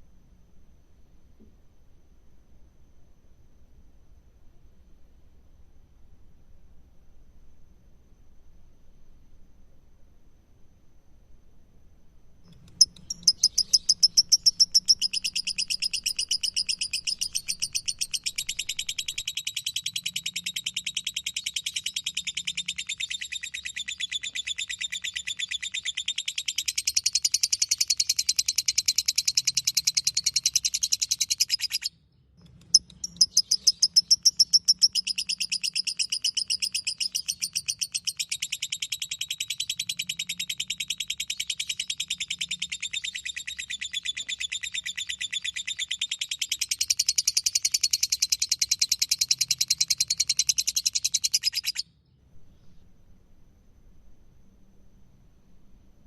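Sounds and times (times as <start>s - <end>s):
lovebird chattering trill: 12.5s - 31.9s, 32.6s - 51.8s.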